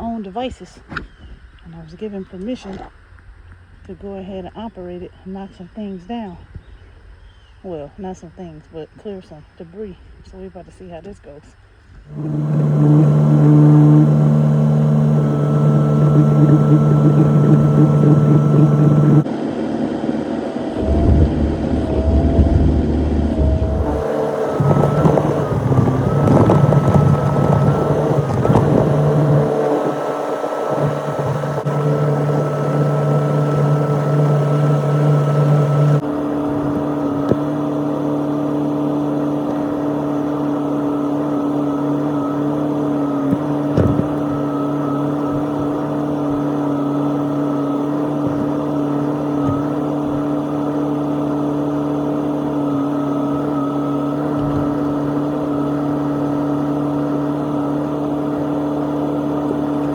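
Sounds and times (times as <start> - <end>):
excavator engine droning: 12.1 - 59.9.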